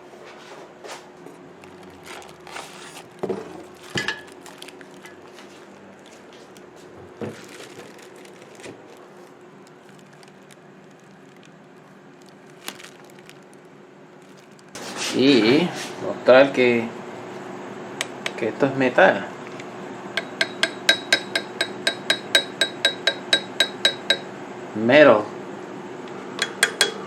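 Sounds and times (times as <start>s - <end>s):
faint steady hum: 0.0s - 27.0s
rustling: 0.3s - 15.2s
parts knocking and clacking: 20.2s - 24.3s, 26.4s - 27.0s.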